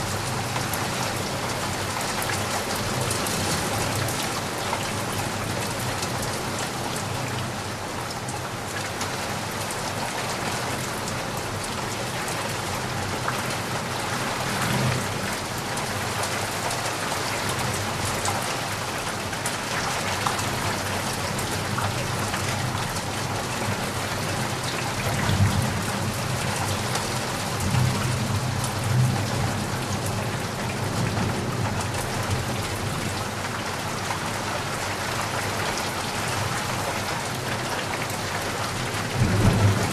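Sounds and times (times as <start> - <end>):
heavy rain falling: 0.0 - 39.9
low thunder rumbling: 39.1 - 39.9.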